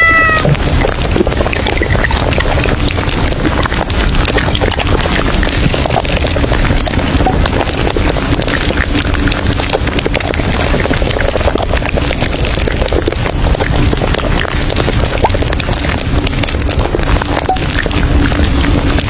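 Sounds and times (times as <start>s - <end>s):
cafe din: 0.0s - 0.9s.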